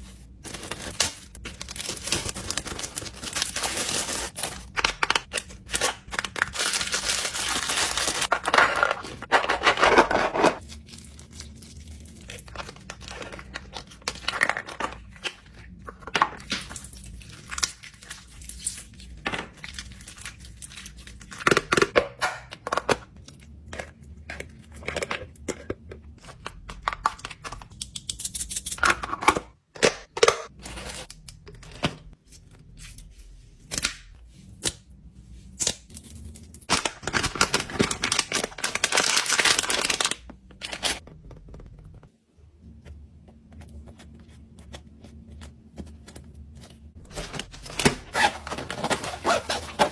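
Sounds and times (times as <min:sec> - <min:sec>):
plastic ripping and crinkling: 0:00.4 - 0:21.9, 0:36.6 - 0:41.0, 0:46.7 - 0:49.9.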